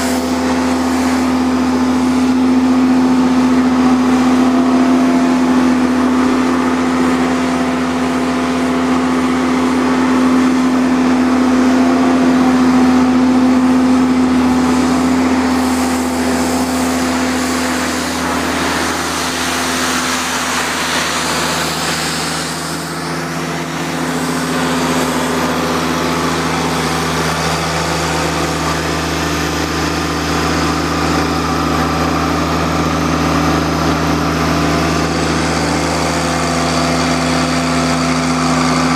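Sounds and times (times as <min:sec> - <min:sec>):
pressure washer hiss: 0:00.0 - 0:03.0, 0:14.4 - 0:29.3
diesel engine running: 0:00.0 - 0:38.9.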